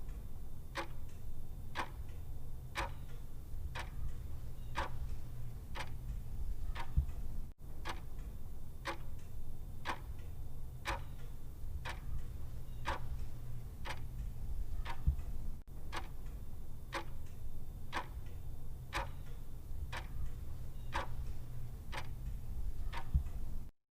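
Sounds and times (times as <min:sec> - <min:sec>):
clock ticking: 0:00.0 - 0:01.2, 0:01.8 - 0:02.2, 0:02.8 - 0:23.7
low steady hum: 0:00.0 - 0:23.7.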